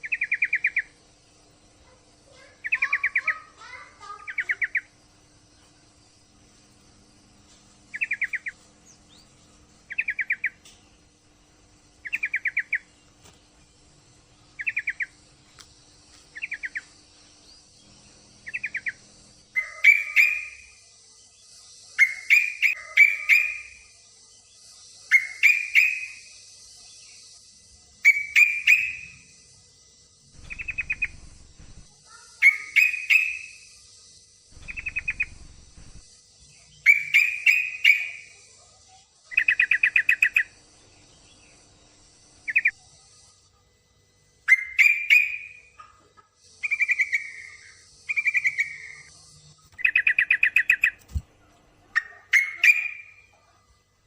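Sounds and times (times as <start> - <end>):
bird chattering calls: 1.9 - 5.0, 7.9 - 9.3, 9.9 - 10.8, 12.0 - 12.9, 14.6 - 15.2, 18.4 - 20.8, 22.0 - 23.9, 30.4 - 33.7, 34.5 - 36.1, 36.8 - 38.4, 39.3 - 40.6, 42.4 - 42.8, 44.5 - 49.1, 49.8 - 51.2, 51.9 - 53.4.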